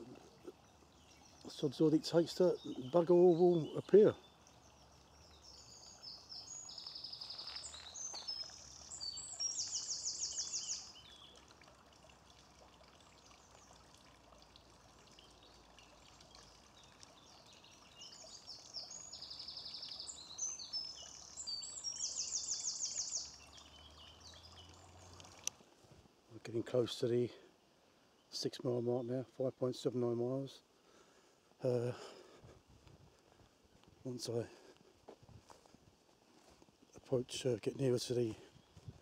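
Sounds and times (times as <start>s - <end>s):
songbird singing with trill: 0.0s - 11.4s, 15.2s - 25.5s
faint background hiss: 0.0s - 39.0s.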